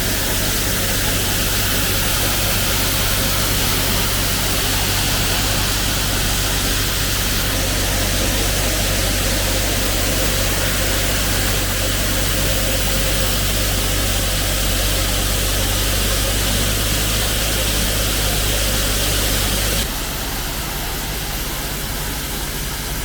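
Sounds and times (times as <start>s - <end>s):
combine harvester engine hum: 0.0s - 23.0s
rush of machine noise: 0.0s - 23.0s.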